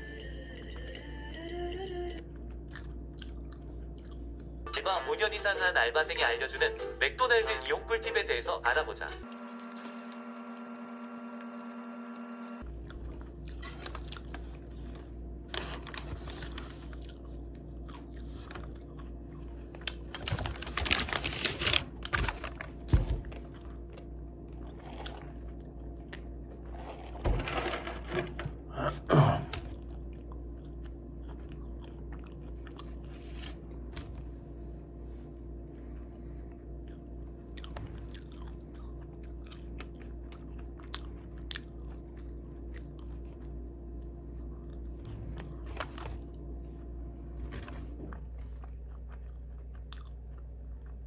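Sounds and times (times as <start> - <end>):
steady low hum: 0.0 - 4.8, 8.5 - 51.0
person chewing crunchy food: 2.3 - 4.6, 9.2 - 20.3, 23.4 - 27.2, 28.9 - 33.9, 36.8 - 51.0.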